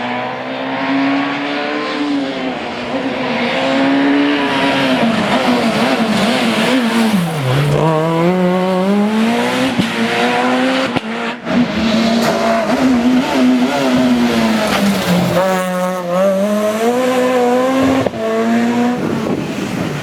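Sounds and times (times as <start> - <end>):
rally car engine revving: 0.0 - 20.0.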